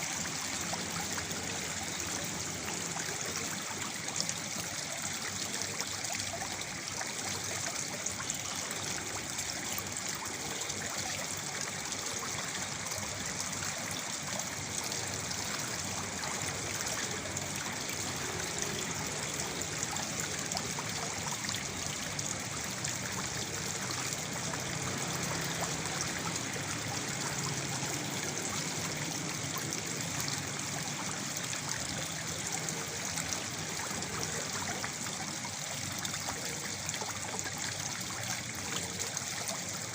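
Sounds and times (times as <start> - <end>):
waterfall splashing into pool: 8.2 - 39.9.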